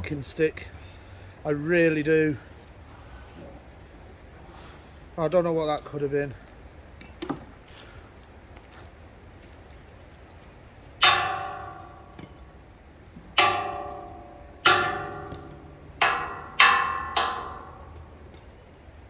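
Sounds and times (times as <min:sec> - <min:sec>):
metal tube struck ringing: 0:11.0 - 0:18.5.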